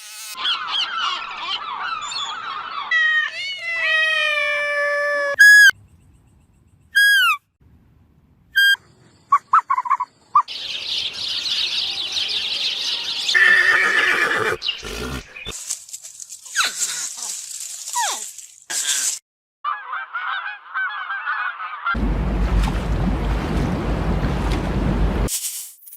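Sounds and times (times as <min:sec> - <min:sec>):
animal calls: 0:00.4 - 0:04.4, 0:13.3 - 0:15.6.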